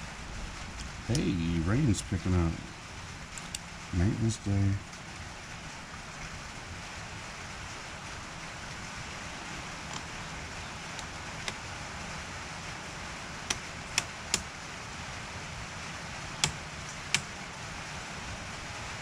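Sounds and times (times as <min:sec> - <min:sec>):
steady rain hiss: 0:00.0 - 0:19.0
sharp clicks or knocks: 0:16.4 - 0:17.3.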